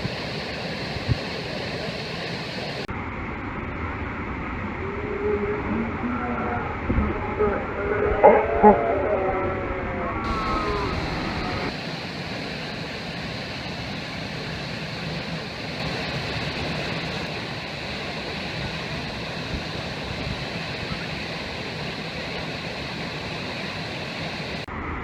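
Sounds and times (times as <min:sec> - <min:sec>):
waterfall rushing: 0:00.0 - 0:02.9, 0:10.2 - 0:24.7.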